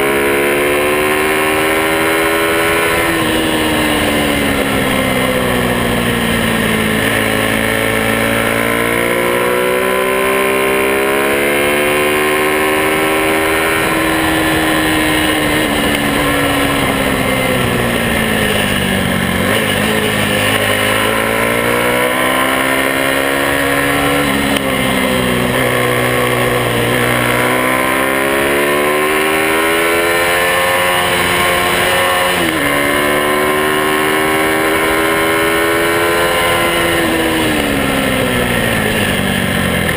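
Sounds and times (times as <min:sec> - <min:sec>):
motorcycle engines revving: 0:00.0 - 0:39.9.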